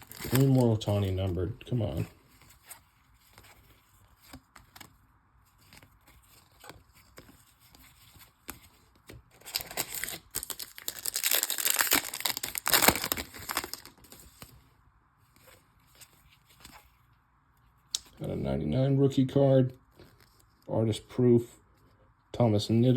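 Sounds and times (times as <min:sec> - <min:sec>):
foil wrapper tearing and crinkling: 0:00.0 - 0:01.1, 0:09.4 - 0:14.1.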